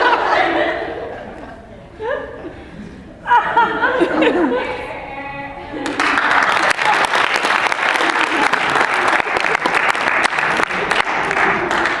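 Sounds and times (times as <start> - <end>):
audience applauding: 5.8 - 12.0.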